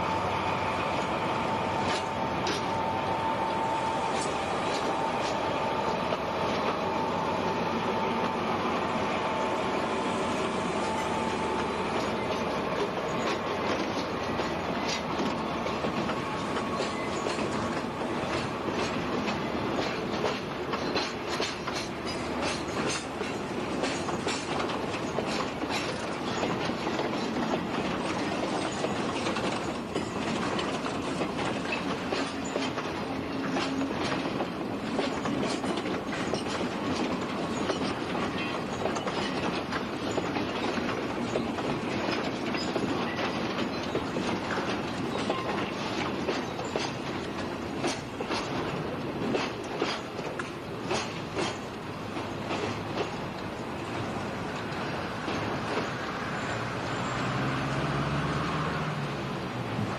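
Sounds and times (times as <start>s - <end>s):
train wheels clacking on rails: 0.0s - 59.9s.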